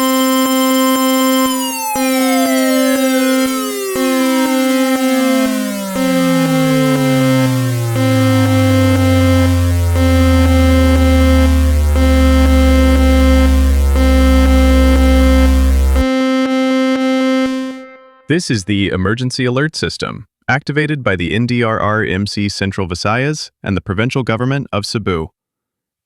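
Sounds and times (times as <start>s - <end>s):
descending tone into deep drone: 0.0s - 16.1s
electronic alarm tone: 0.0s - 18.3s.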